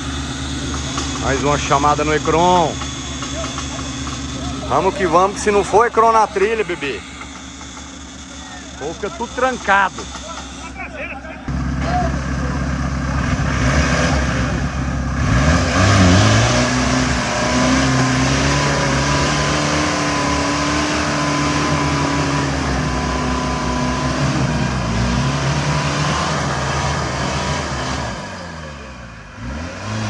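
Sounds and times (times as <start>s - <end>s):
high-pitched whine: 0.0s - 12.0s
engine revving: 0.0s - 30.0s.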